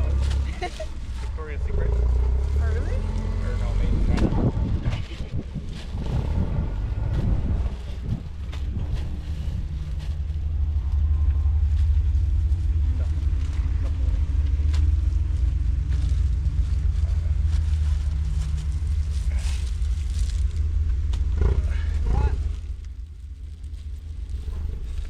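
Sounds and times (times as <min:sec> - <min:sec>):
low rumble: 0:00.0 - 0:25.0
faint hum: 0:05.9 - 0:25.0.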